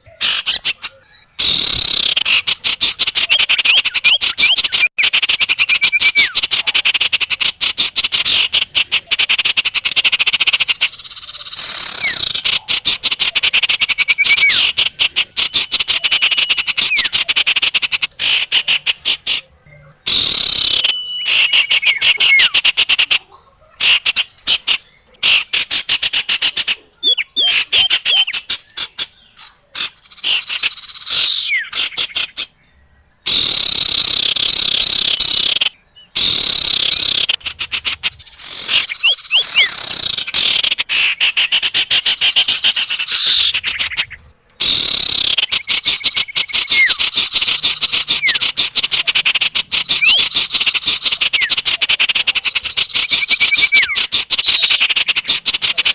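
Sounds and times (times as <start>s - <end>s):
songbird dry chattering: 0.0s - 55.9s
bird whistled notes: 3.2s - 6.4s, 11.0s - 12.4s, 13.3s - 14.8s, 15.4s - 17.6s, 20.1s - 22.6s, 30.1s - 31.8s, 38.2s - 40.2s, 42.2s - 51.6s, 52.8s - 55.0s.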